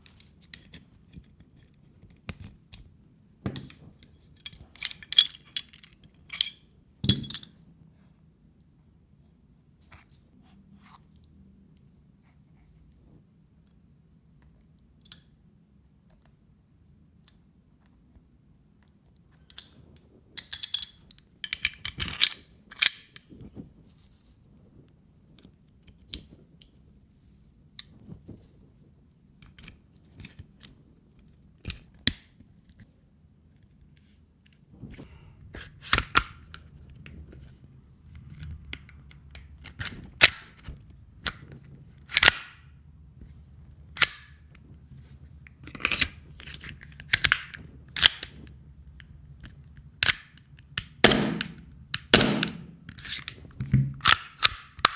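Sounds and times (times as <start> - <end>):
metallic clicks of pistol: 42.1 - 42.6, 44.0 - 44.4, 45.8 - 48.4, 50.0 - 53.2, 54.0 - 54.9.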